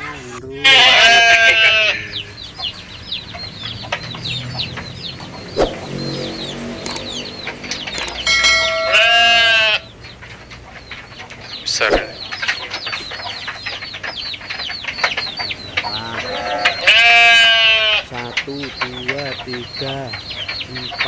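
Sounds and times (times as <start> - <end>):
goat bleating: 0.0 - 2.4, 8.4 - 9.9, 15.6 - 20.0
small birds chirping: 0.0 - 21.0.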